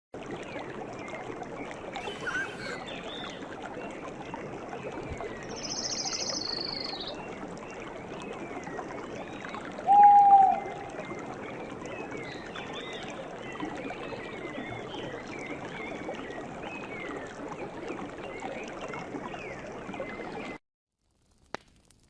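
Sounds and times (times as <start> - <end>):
running water: 0.2 - 20.6
bird chirps: 2.0 - 2.8
low held bird call: 2.0 - 2.9.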